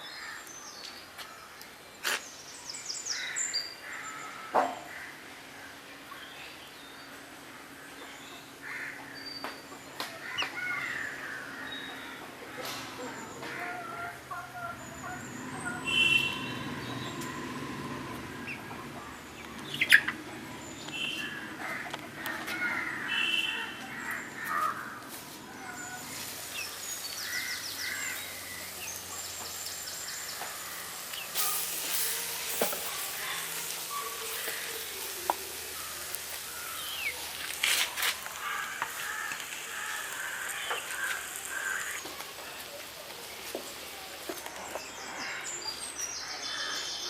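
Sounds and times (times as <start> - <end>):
birds calling: 0.0 - 47.0
steady hiss: 23.1 - 45.1.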